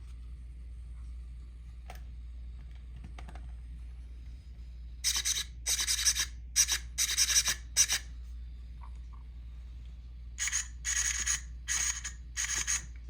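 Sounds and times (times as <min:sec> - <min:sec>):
servos whirring: 0:10.4 - 0:12.9.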